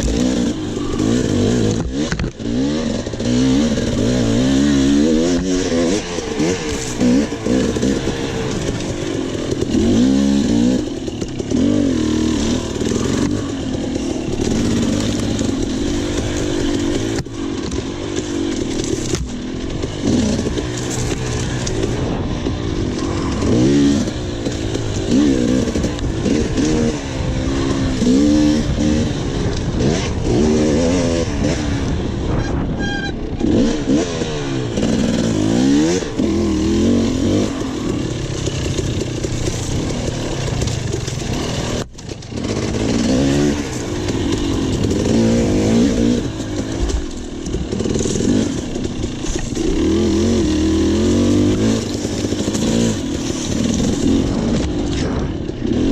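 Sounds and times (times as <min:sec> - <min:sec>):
dirt bike engine revving: 0:00.0 - 0:55.9.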